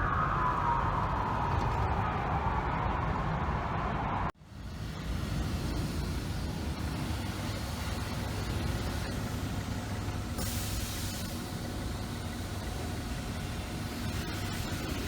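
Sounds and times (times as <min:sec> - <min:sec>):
heavy vehicle engine running: 0:04.4 - 0:15.0
air brakes hissing: 0:10.3 - 0:11.7.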